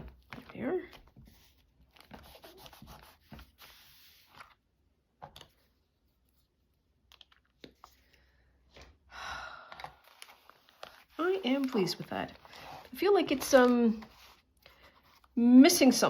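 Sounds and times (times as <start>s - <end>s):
paper rustle: 10.0s - 15.4s.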